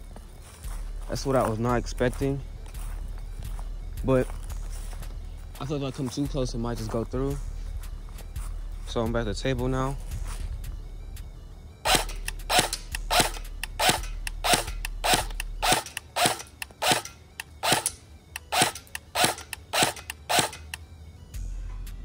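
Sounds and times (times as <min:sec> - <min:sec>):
airsoft gun shots: 0:11.9 - 0:20.8.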